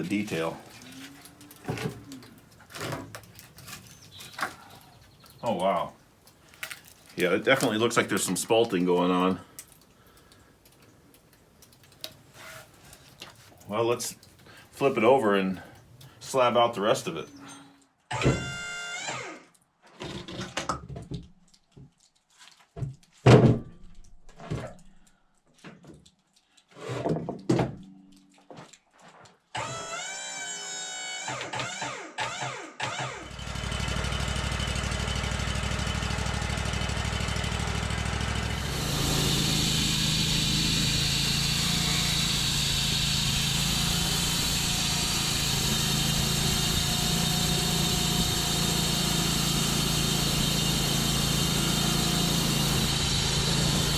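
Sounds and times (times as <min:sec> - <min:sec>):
wood knocks and thuds: 0:22.8 - 0:24.8
sawmill engine running: 0:33.1 - 0:53.9.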